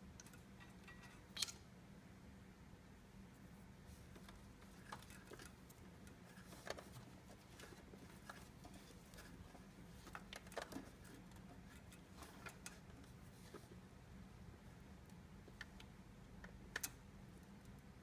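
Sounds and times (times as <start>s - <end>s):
faint steady hum: 0.0s - 18.0s
small clicks and taps: 15.0s - 17.9s.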